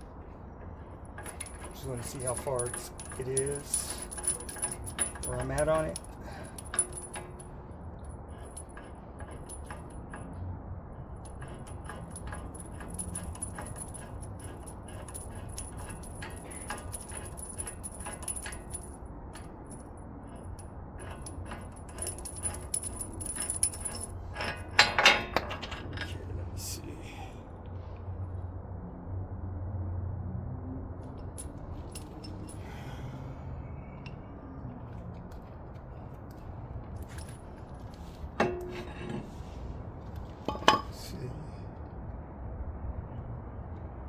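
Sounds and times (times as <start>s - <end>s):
metal tools clinking and rattling: 0.1s - 10.4s, 11.1s - 26.3s, 31.2s - 33.0s, 34.8s - 41.2s.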